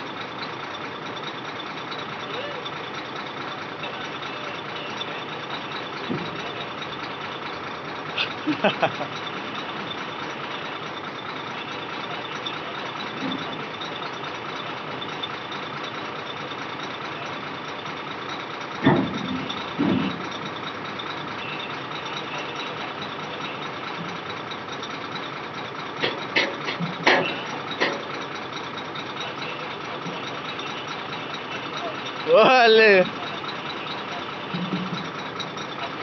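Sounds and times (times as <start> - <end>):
heavy vehicle engine running: 0.0 - 36.0
reversing alarm beeping: 1.2 - 36.0
metal clanks: 18.2 - 21.2, 25.9 - 29.2, 33.2 - 35.8.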